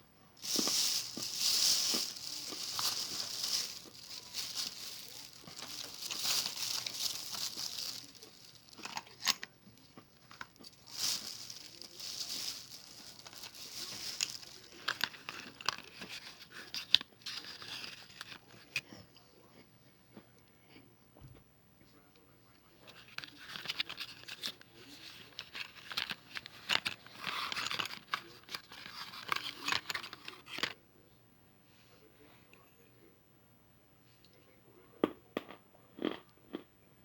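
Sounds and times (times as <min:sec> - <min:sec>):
sharp clicks and crunches: 0:00.4 - 0:18.8
crinkling and rustling: 0:00.4 - 0:18.9, 0:22.8 - 0:30.8.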